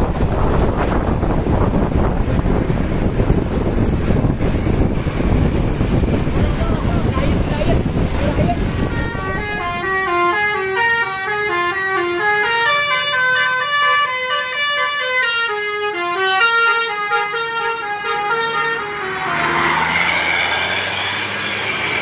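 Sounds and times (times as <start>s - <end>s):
rushing noise with gliding tone: 0.0s - 9.9s, 18.5s - 22.0s
bus horn playing melody: 8.7s - 19.9s.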